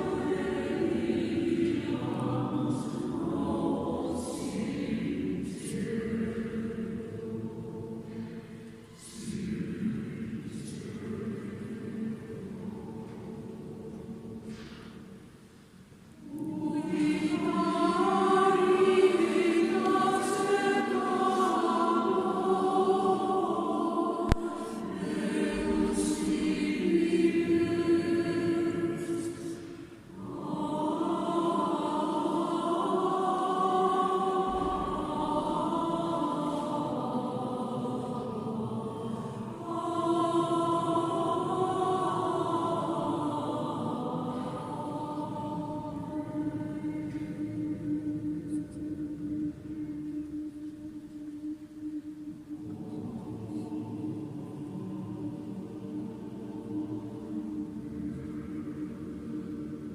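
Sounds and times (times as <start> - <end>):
choir singing: 0.0 - 59.9.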